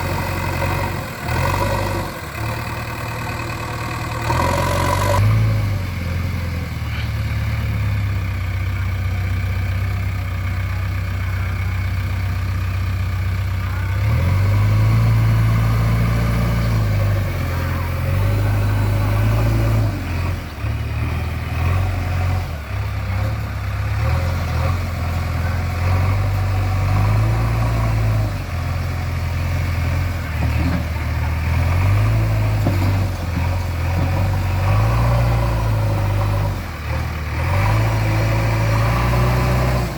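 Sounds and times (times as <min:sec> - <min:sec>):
diesel engine revving: 0:00.0 - 0:39.9.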